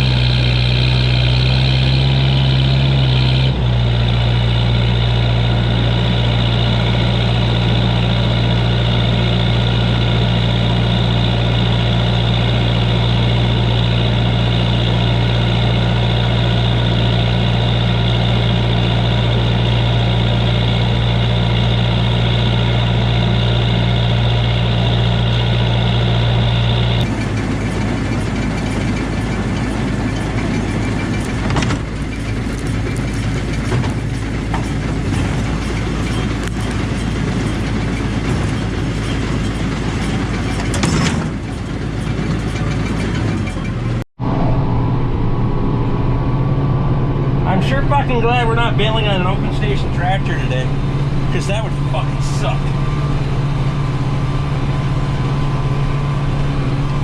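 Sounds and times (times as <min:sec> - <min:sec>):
tractor engine droning: 0:00.0 - 0:57.0
rough clattering noise: 0:27.0 - 0:44.0.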